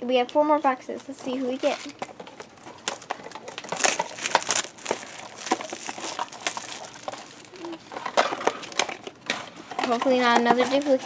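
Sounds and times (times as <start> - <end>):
cardboard and wrapping crinkling: 0.1 - 11.0
packaging being torn open: 1.6 - 9.2.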